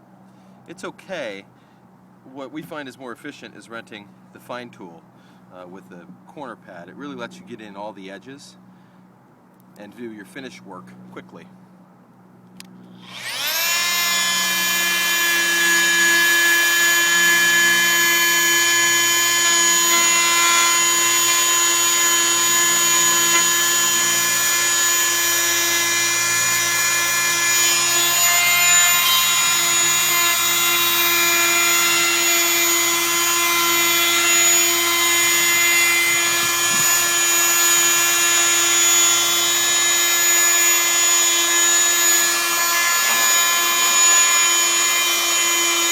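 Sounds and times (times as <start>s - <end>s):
oscillating multi-tool sanding: 13.0s - 45.9s.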